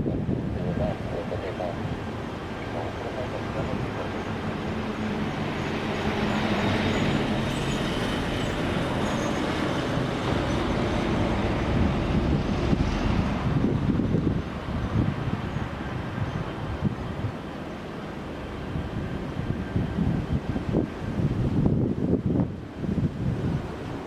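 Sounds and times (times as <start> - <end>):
rough low rumble: 0.0 - 5.0
jet engine drone: 0.0 - 21.2.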